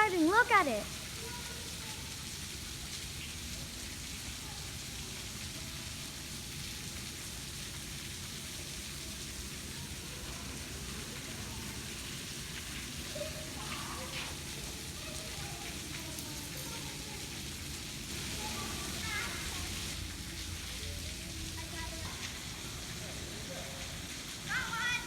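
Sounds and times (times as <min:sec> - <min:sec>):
waterfall rushing: 0:00.0 - 0:01.0.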